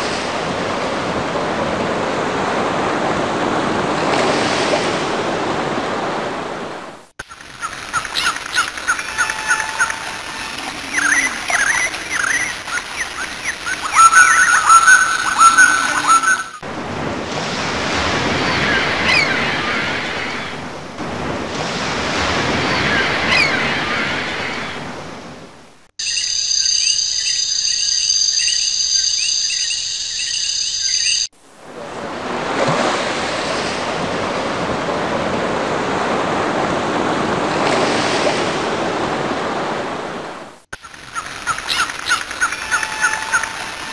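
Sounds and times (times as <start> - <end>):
ocean waves: 0.0 - 25.9, 31.3 - 43.9
steady surf: 0.0 - 25.9, 31.4 - 43.9
birds chirping: 7.4 - 16.6, 26.0 - 31.3.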